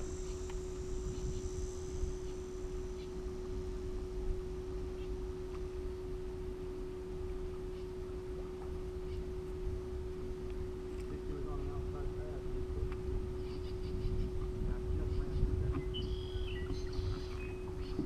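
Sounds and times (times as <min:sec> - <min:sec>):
electric motor humming: 0:00.0 - 0:18.0
wind rumble on microphone: 0:00.0 - 0:18.0
faint ticks: 0:00.2 - 0:01.4.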